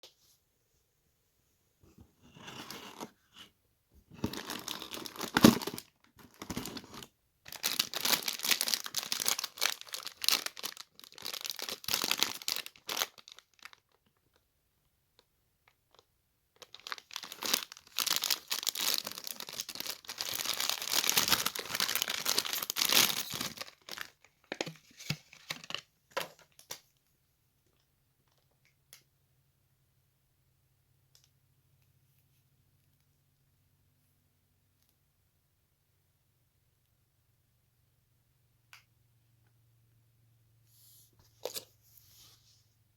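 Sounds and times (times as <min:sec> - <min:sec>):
plastic packaging tearing and crinkling: 0:04.2 - 0:13.9, 0:16.6 - 0:24.2.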